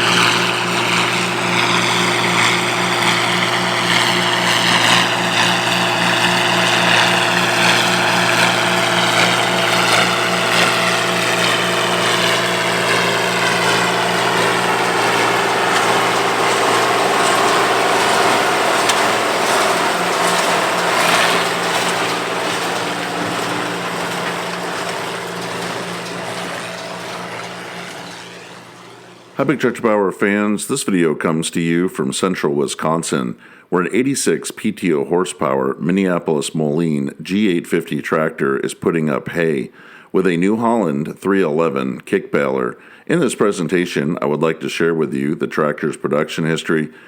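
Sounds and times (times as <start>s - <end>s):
tractor running under load: 0.0s - 30.5s.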